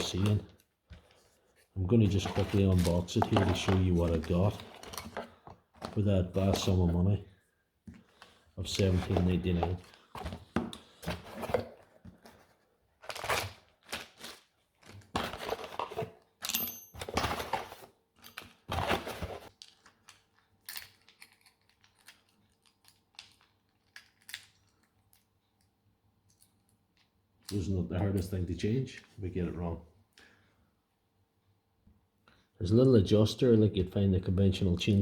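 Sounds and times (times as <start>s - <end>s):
packaging rustling and tearing: 2.1s - 6.7s, 8.7s - 16.2s.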